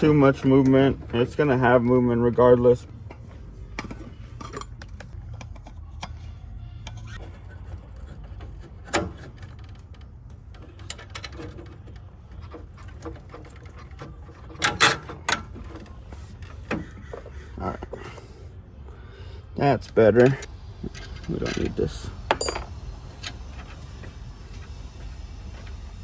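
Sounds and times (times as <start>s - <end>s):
metal clicks and clanks: 0.0s - 6.2s, 6.8s - 18.2s
metal clatter: 6.8s - 17.3s.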